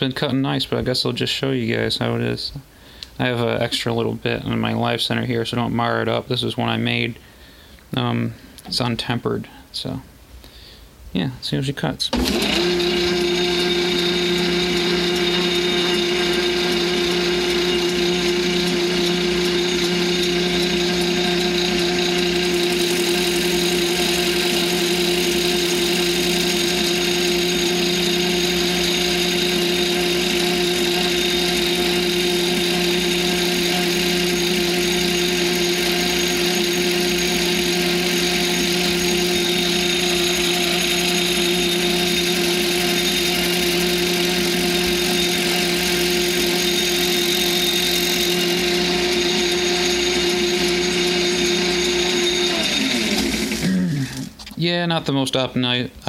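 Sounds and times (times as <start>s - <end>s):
lathe running with steady hum: 12.2s - 53.8s.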